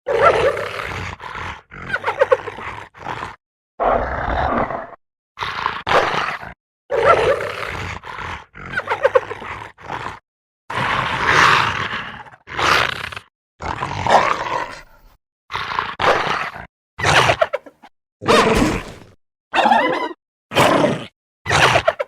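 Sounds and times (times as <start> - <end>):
monster roaring calls: 9.5 - 16.7.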